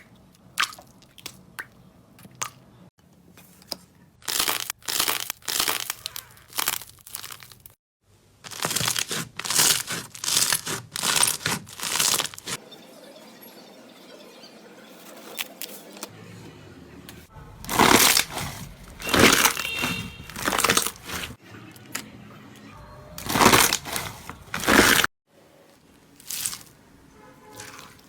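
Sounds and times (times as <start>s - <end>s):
slime squeezed crackling: 8.5s - 12.6s, 17.6s - 21.4s, 23.2s - 25.1s, 26.2s - 26.8s.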